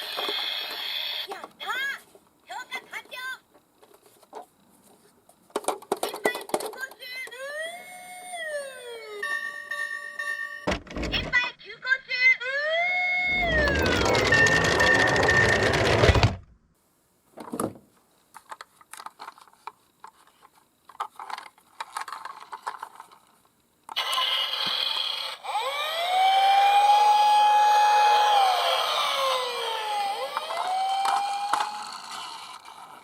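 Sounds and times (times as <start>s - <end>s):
electronic toy sirens wailing: 7.4s - 10.6s, 12.5s - 16.2s, 25.4s - 32.5s.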